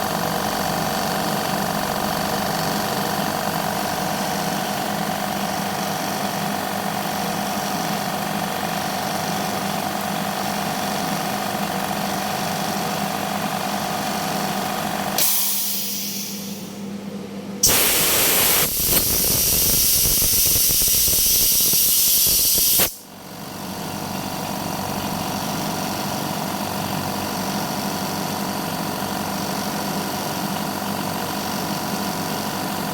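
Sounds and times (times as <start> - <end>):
air compressor motor humming: 0.0 - 16.8, 17.6 - 32.9
short hiss: 15.2 - 16.6, 17.6 - 23.0.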